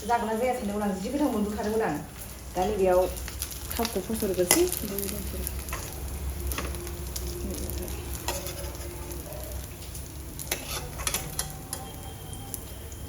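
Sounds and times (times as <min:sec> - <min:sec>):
food sizzling in hot oil: 0:00.0 - 0:13.0
utensil clicking against pan: 0:03.3 - 0:08.9, 0:09.8 - 0:12.0.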